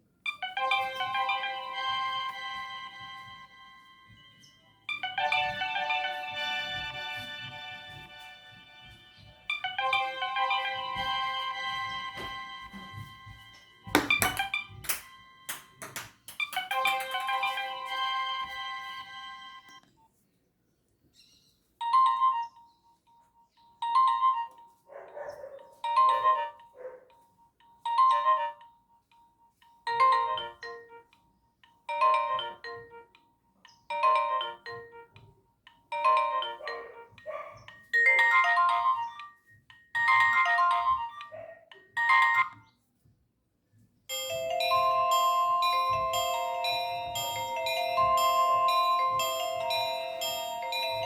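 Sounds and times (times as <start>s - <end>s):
mobile phone ringtone: 0.3s - 15.5s, 16.5s - 19.8s, 21.8s - 24.8s, 25.8s - 26.9s, 27.7s - 31.1s, 31.8s - 33.2s, 33.9s - 41.3s, 42.0s - 42.7s, 44.1s - 51.0s
different ringtone melody: 0.3s - 19.8s, 21.8s - 25.1s, 25.7s - 42.7s, 44.1s - 51.0s.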